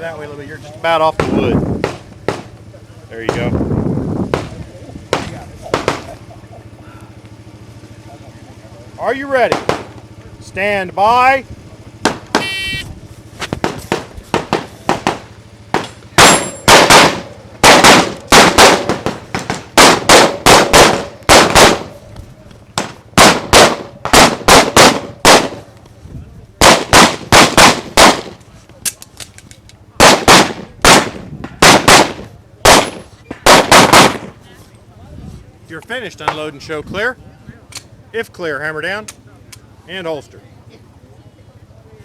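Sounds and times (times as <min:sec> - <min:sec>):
pistol shots in fast strings: 0:04.3 - 0:06.2, 0:09.4 - 0:10.0, 0:13.6 - 0:21.9, 0:22.8 - 0:25.6, 0:26.6 - 0:28.4, 0:30.0 - 0:34.3.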